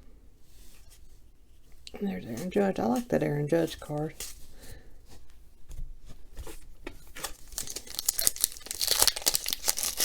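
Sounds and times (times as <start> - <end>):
card pack rustling and crinkling: 2.0 - 10.0
cards clicking and scraping: 6.4 - 10.0.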